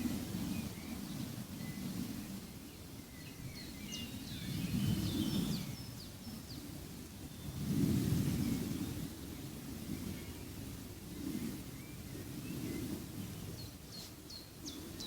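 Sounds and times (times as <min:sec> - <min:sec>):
small birds chirping: 0:11.8 - 0:15.0.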